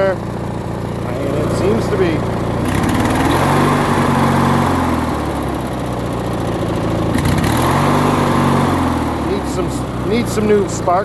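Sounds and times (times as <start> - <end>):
lawn tractor engine running: 0.0 - 11.0
person talking: 1.0 - 2.3, 9.2 - 11.0.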